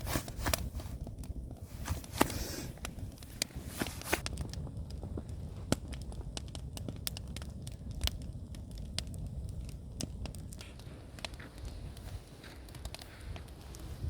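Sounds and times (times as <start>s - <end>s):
wood fire crackling: 0.0s - 14.0s.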